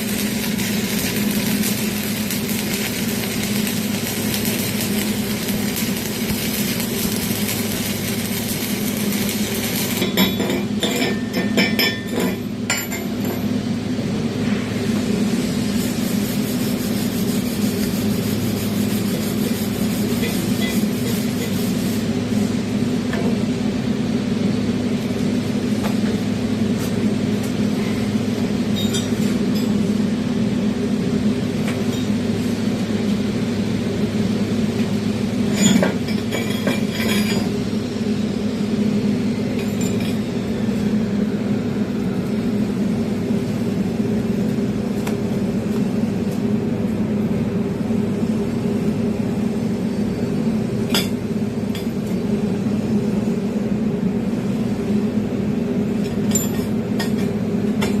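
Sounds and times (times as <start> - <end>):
sharp welding pops: 0.0 - 10.8
welding arc crackling: 0.0 - 11.4, 14.8 - 22.8.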